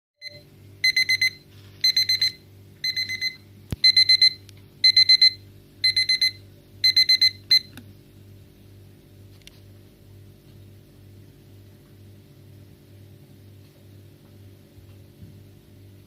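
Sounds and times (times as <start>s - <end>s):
kitchen timer beeping: 0.2s - 7.8s.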